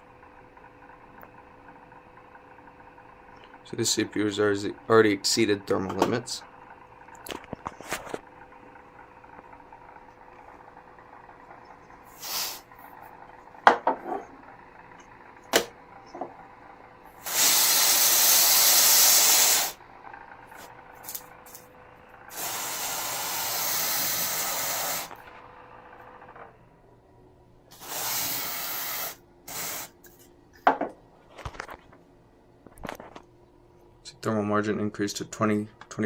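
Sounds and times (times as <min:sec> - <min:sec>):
aerosol spray hissing: 0:12.1 - 0:12.7, 0:17.2 - 0:19.8, 0:22.3 - 0:25.2, 0:27.7 - 0:30.0.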